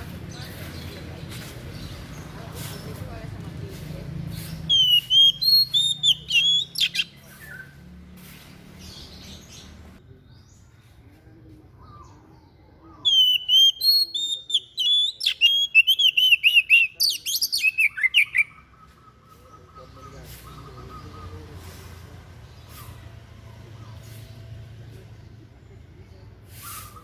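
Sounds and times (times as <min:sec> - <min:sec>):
songbird chirping: 0:00.0 - 0:27.0.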